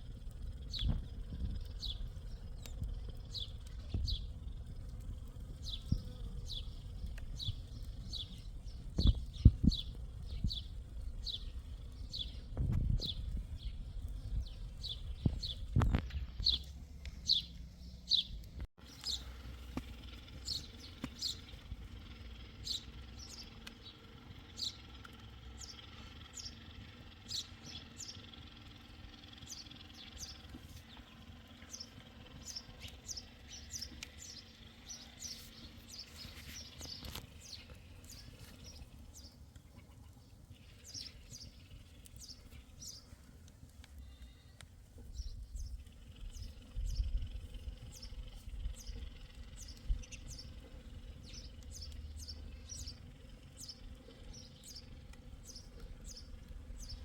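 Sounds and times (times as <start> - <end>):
low rumble: 0.0 - 28.4
songbird chirping: 5.6 - 43.4, 44.0 - 57.0.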